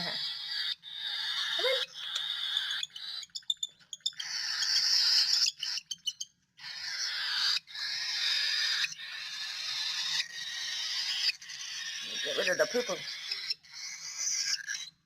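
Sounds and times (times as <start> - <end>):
young birds raspy begging calls: 0.0 - 15.0
small bird clicks: 2.0 - 4.8.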